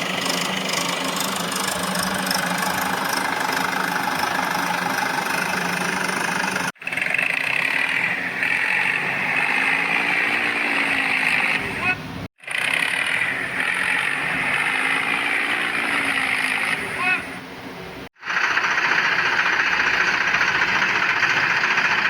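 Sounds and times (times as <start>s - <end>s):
toy vehicle motor humming: 0.0s - 10.4s.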